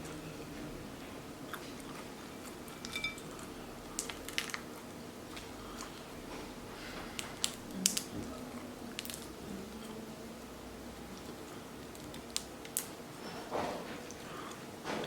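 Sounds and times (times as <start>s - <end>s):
steady low hum: 0.0s - 15.0s
seafood shells cracking: 3.9s - 4.9s, 7.2s - 8.1s, 8.9s - 9.4s, 11.2s - 13.0s.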